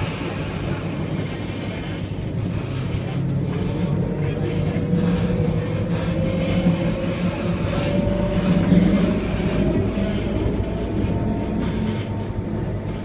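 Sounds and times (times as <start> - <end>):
tram rumble: 0.0 - 13.0.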